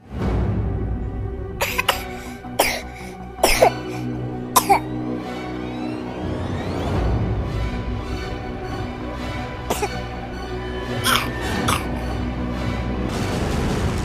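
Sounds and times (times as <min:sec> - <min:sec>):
background music: 0:00.0 - 0:14.0
baby coughing: 0:01.6 - 0:04.9, 0:09.7 - 0:10.1, 0:11.0 - 0:12.2.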